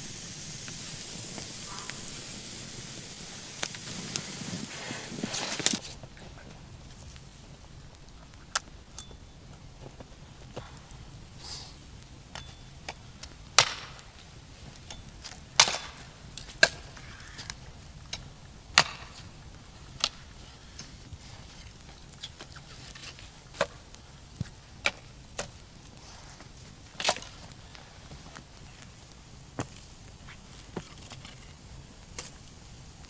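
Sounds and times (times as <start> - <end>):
wood being chopped: 18.8 - 19.2.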